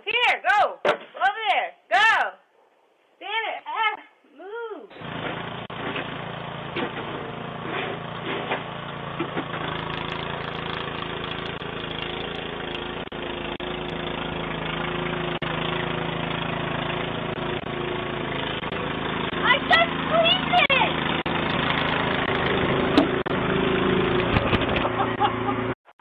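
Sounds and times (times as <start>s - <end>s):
small engine running steadily: 5.0s - 25.8s.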